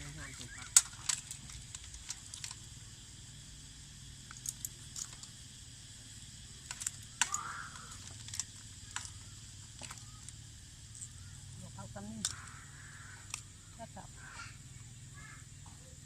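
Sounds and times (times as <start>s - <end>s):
faint chirp: 0.0s - 1.0s, 6.1s - 16.0s
cicadas droning: 0.0s - 16.0s.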